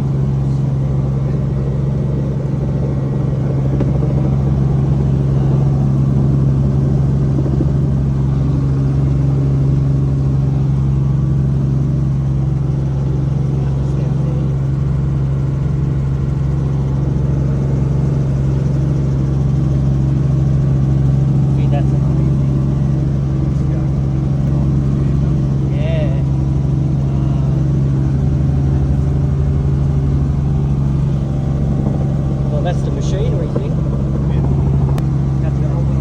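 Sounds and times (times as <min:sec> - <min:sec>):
helicopter engine and rotor noise: 0:00.0 - 0:36.0.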